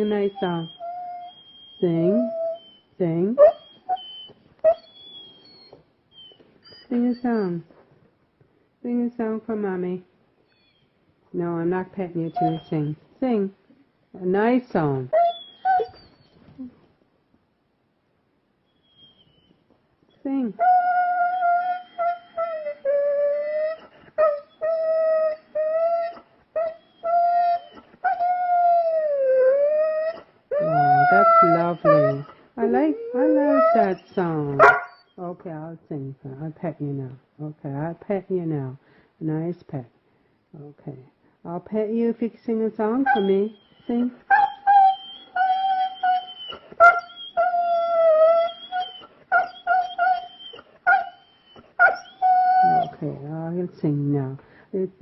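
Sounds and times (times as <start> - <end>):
dog howling: 20.6 - 32.2, 44.3 - 53.0.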